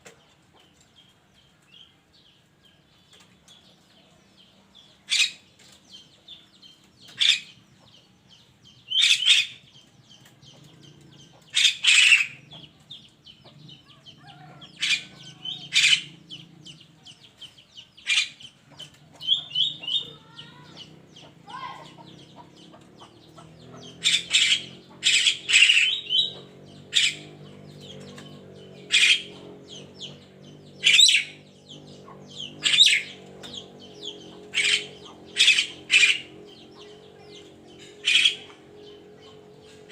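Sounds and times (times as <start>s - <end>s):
songbird harsh squawky calls: 7.0s - 7.7s, 8.9s - 9.8s, 10.5s - 39.9s.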